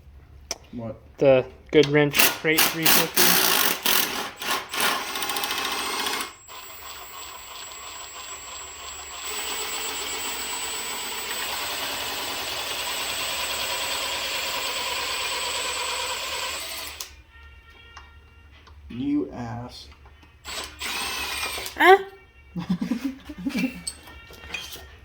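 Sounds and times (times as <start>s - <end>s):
rattly power tool running: 2.2s - 17.1s, 20.5s - 21.8s.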